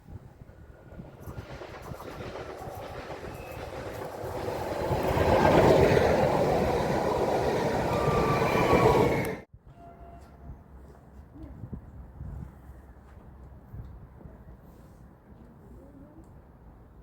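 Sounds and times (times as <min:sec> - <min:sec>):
freight train passing: 0:00.0 - 0:10.2.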